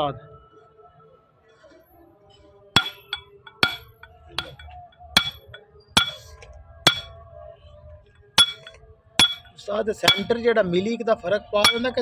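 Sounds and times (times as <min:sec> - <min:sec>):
hammer blows on metal: 0:02.8 - 0:07.1, 0:08.4 - 0:10.4, 0:11.7 - 0:12.0.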